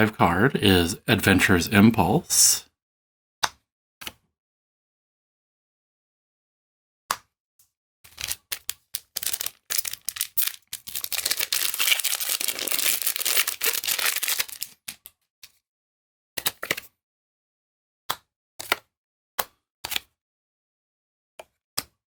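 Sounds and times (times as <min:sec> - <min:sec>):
foil wrapper tearing and crinkling: 0:08.1 - 0:15.0.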